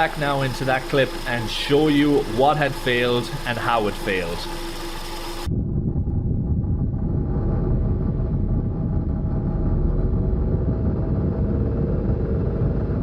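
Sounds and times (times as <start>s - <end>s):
car engine rattling rumble: 0.0s - 13.0s.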